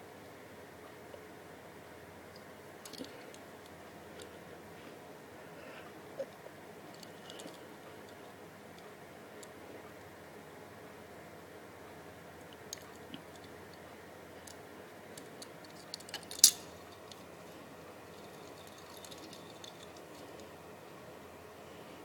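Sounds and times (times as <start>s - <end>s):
steady low hiss: 0.0s - 22.0s
toy car clicks and taps: 15.2s - 17.2s.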